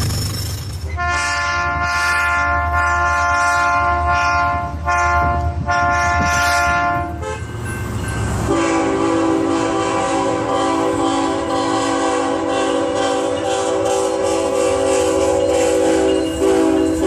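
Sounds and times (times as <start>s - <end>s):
locomotive engine rumble: 0.0s - 17.0s
locomotive air horn blasts: 0.9s - 7.7s, 8.4s - 17.0s
lower-pitched horn chord: 8.5s - 17.0s.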